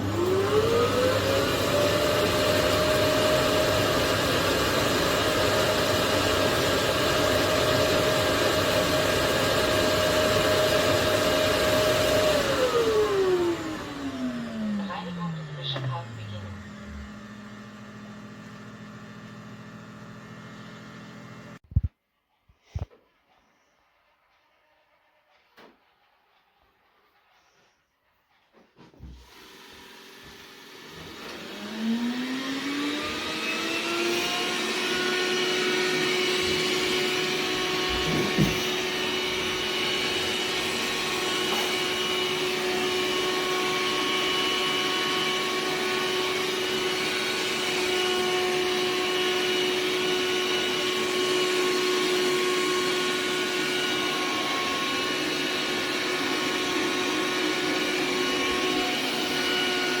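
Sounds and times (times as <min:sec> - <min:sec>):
robot vacuum suction motor whine: 0:00.0 - 0:21.6, 0:29.0 - 1:00.0
knock: 0:38.0 - 0:38.7.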